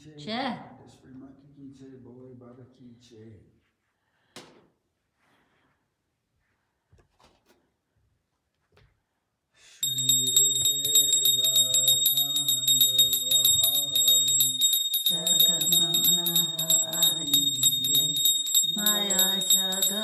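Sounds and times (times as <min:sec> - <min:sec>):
bells ringing rapidly: 0:09.8 - 0:20.0
voices singing a chant: 0:09.8 - 0:20.0.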